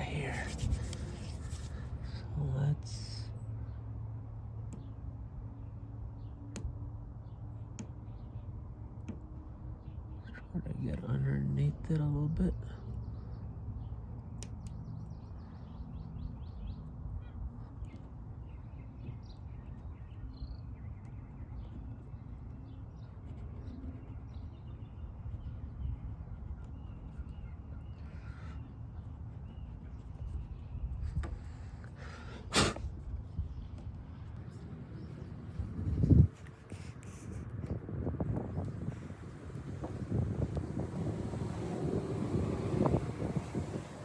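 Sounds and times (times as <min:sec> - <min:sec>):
low outdoor rumble: 0:00.0 - 0:44.0
birds calling: 0:13.0 - 0:37.6.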